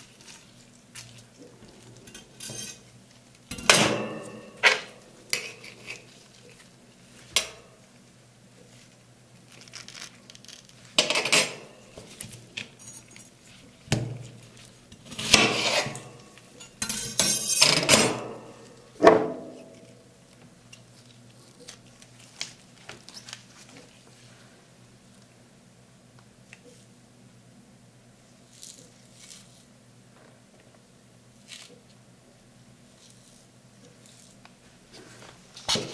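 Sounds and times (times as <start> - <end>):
metal clank: 2.1 - 2.8, 3.5 - 5.7, 15.2 - 19.9
metal spatulas scraping steel plate: 2.1 - 2.9, 3.6 - 6.1, 15.0 - 18.7.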